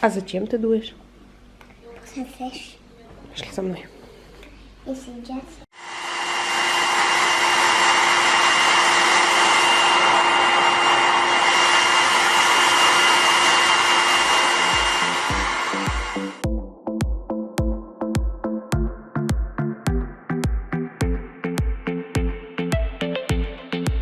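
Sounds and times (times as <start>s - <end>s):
hair dryer blowing: 5.7s - 16.4s
electronic music with beat: 15.9s - 24.0s.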